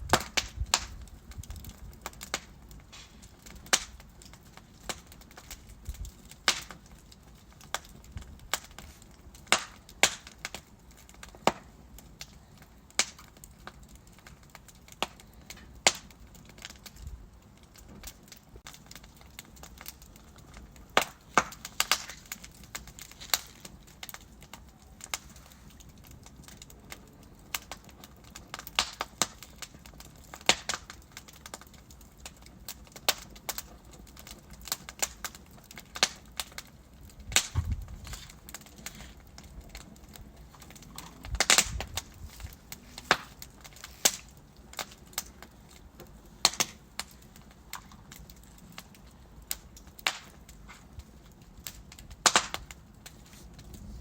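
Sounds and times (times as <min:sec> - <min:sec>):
fire hissing: 0:00.0 - 0:06.8, 0:19.7 - 0:26.6, 0:34.6 - 0:54.0
wood fire crackling and popping: 0:00.0 - 0:54.0.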